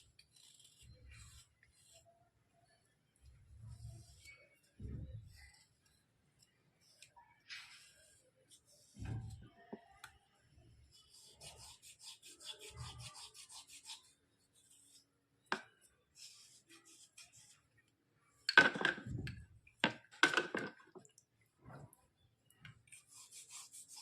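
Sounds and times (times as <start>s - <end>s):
slate pencil scraping: 0.0s - 2.0s, 10.9s - 15.0s, 22.9s - 24.0s.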